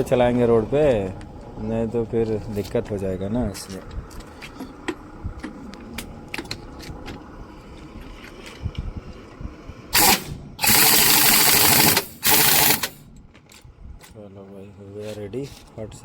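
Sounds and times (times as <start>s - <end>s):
loud hissing bursts: 10.0s - 13.0s.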